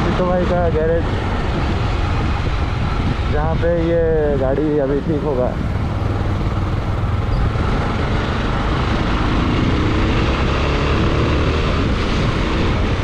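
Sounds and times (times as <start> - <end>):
wind and road noise: 0.0 - 13.0
motorcycle engine running: 5.0 - 13.0.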